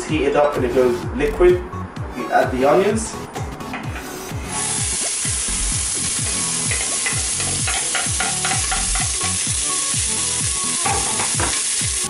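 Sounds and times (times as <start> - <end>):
background music with steady beat: 0.0 - 12.0
onions sizzling in oil: 4.4 - 12.0.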